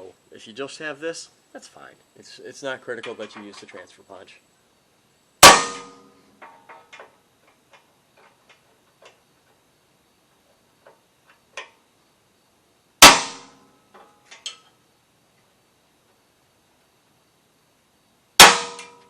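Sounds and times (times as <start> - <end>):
hammer striking metal punch: 5.4 - 6.1, 13.0 - 13.6, 18.4 - 19.0.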